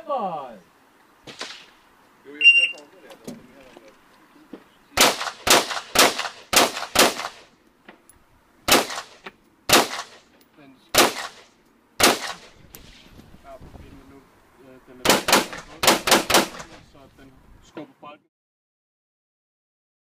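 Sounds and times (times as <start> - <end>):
rifle shots with echo: 5.0 - 7.5, 8.7 - 10.2, 11.0 - 13.0, 15.0 - 16.8.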